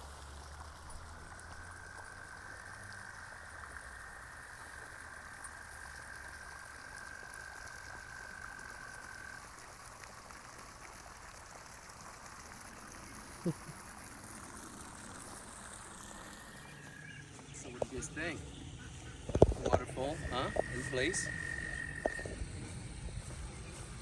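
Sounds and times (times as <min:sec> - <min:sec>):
water trickling from waterfall: 0:00.0 - 0:17.1.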